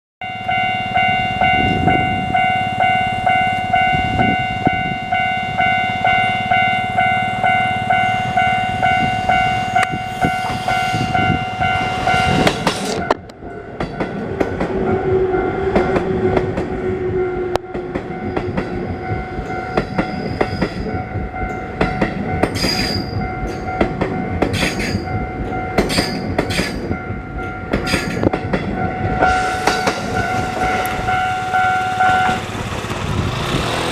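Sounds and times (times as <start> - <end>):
level crossing bell ringing: 0.2 - 13.3, 28.9 - 32.4
train wheels clattering: 9.0 - 33.9.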